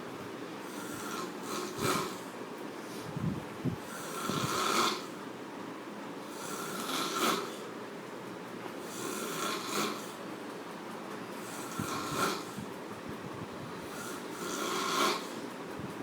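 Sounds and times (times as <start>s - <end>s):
person snoring heavily: 0.6s - 2.3s, 3.8s - 5.2s, 6.2s - 7.6s, 8.8s - 10.2s, 11.4s - 12.6s, 13.8s - 15.4s.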